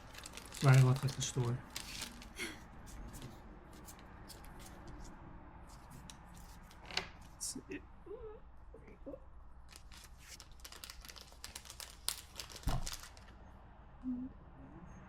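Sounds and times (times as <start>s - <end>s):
foil wrapper crinkling: 0.0s - 3.2s, 9.7s - 13.3s.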